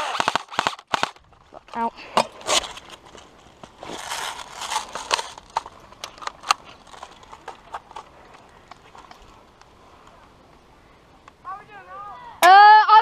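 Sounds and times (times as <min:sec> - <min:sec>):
crunching footsteps on dry ground: 0:00.0 - 0:10.2
rustling: 0:00.0 - 0:10.9.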